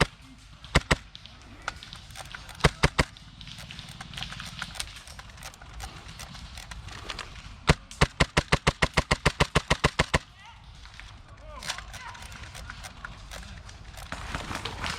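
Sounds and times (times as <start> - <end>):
airsoft gun shots: 1.8 - 10.3
rustling shuffle of movement: 10.6 - 14.9.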